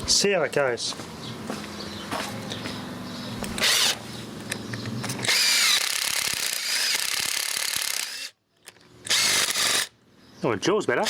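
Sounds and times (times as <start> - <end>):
cordless drill motor humming: 3.4 - 4.0, 5.2 - 8.4, 9.0 - 9.9
drill bit squealing into wood: 3.6 - 4.0, 5.2 - 8.3, 9.1 - 9.9.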